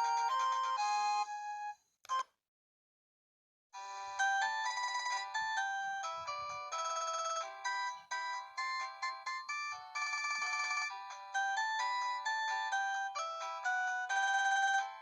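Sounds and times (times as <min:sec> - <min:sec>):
mobile phone ringtone melody: 0:00.0 - 0:01.8, 0:03.8 - 0:15.0.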